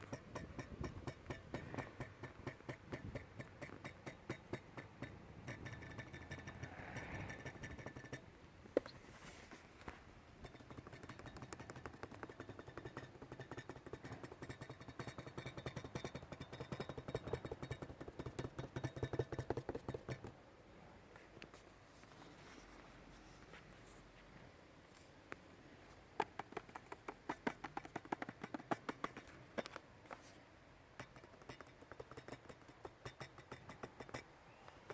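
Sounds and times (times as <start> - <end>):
fast typing on keyboard: 10.5 - 20.2, 26.2 - 29.3.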